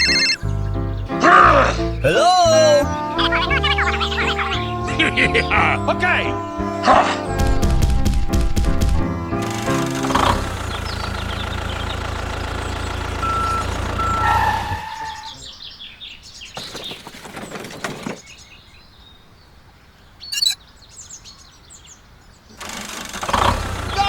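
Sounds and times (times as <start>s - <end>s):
short beeps: 0.0s - 0.4s, 20.3s - 20.6s
birds chirping: 0.0s - 22.6s
engine running: 7.4s - 15.1s, 22.6s - 24.0s.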